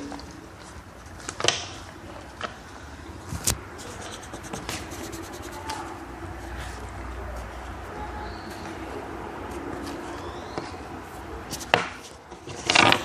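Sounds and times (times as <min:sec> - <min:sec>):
steady background hum: 0:00.0 - 0:12.7
sharp knocks and scrapes: 0:03.3 - 0:06.0.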